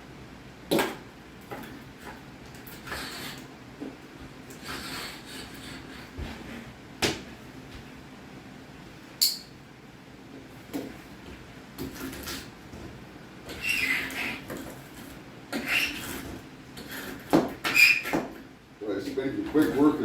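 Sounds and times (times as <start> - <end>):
caulk tool scraping: 2.6 - 3.5, 4.5 - 6.6, 11.8 - 12.5, 13.4 - 18.4.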